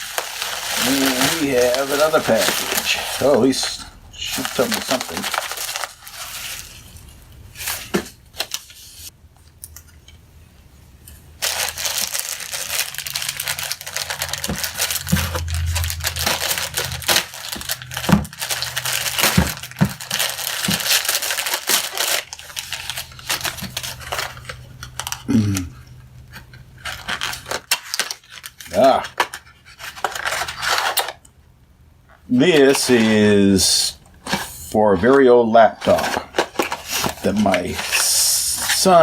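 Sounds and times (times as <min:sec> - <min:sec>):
packaging crinkling and tearing: 0:00.0 - 0:07.0, 0:11.4 - 0:31.2, 0:32.5 - 0:33.4, 0:35.7 - 0:39.0.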